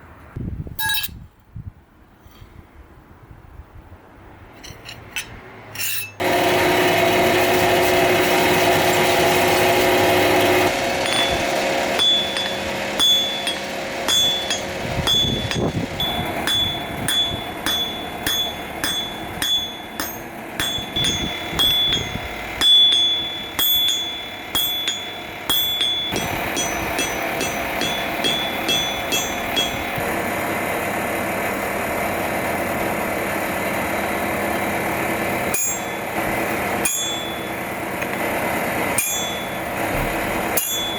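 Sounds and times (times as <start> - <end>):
hammer striking steel on anvil: 0.8 - 1.2, 4.6 - 6.5, 7.4 - 30.1, 35.4 - 38.3, 38.9 - 40.9
machine hum: 6.2 - 40.9.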